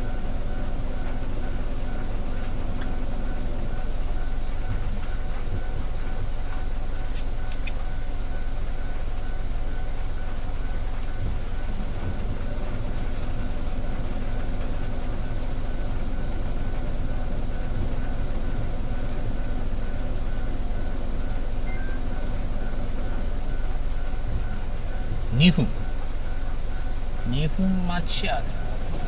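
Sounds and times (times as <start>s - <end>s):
faint constant tones: 0.0s - 29.0s.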